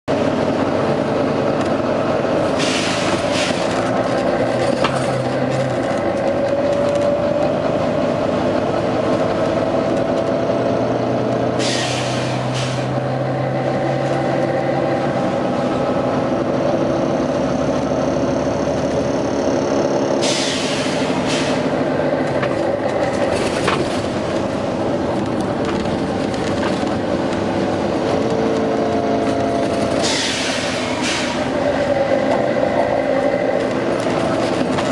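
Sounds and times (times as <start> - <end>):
bus diesel engine droning: 0.0 - 34.9
air brake hisses: 2.6 - 3.8, 11.6 - 12.9, 20.2 - 21.7, 30.0 - 31.5.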